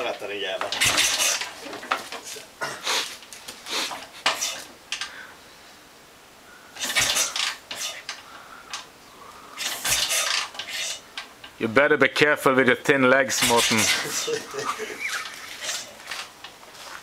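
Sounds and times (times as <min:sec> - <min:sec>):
metallic clanks of kick-starting: 0:00.6 - 0:02.0, 0:06.8 - 0:07.6, 0:09.6 - 0:11.3.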